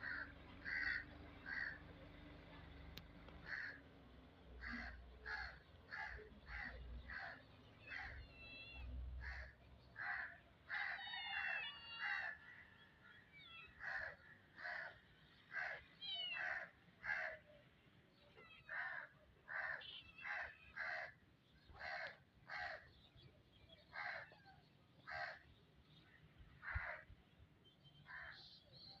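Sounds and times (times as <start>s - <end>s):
crow cawing: 0.0s - 1.8s, 3.4s - 3.8s, 4.6s - 8.2s, 9.2s - 12.6s, 13.7s - 15.8s, 16.4s - 17.4s, 18.7s - 22.9s, 23.9s - 24.3s, 25.0s - 25.4s, 26.6s - 27.1s, 28.1s - 28.4s.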